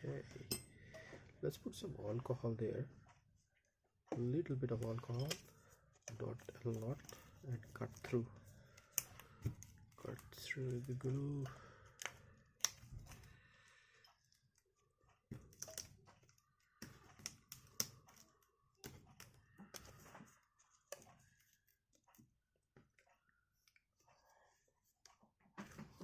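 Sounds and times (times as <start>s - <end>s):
plastic pry tool scraping: 4.7s - 13.3s.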